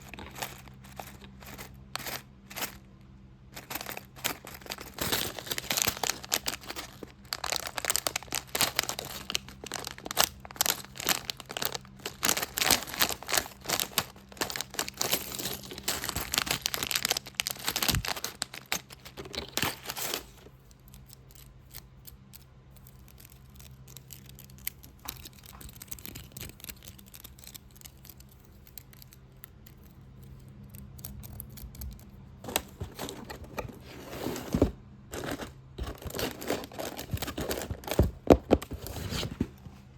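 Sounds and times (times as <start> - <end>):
tapping and scratching on a box: 0.0 - 2.8, 3.6 - 20.4, 32.4 - 39.7
crinkling: 0.0 - 39.9.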